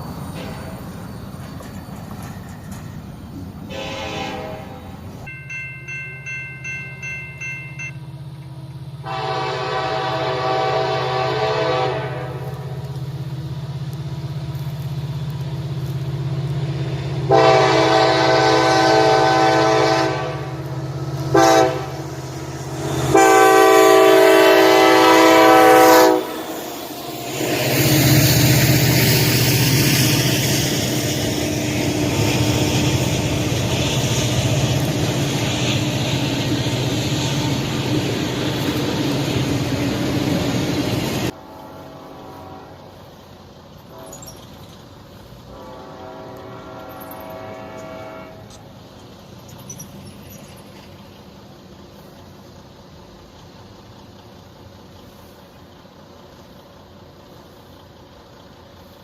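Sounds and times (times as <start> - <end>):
train passing rumble: 0.0 - 59.0
locomotive air horn blasts: 3.7 - 5.1, 9.0 - 13.0, 17.2 - 22.1, 22.8 - 28.6, 41.2 - 44.4, 45.3 - 48.8
rapid ringing bell: 5.3 - 8.2
diesel engine running: 5.7 - 47.8, 48.5 - 59.0.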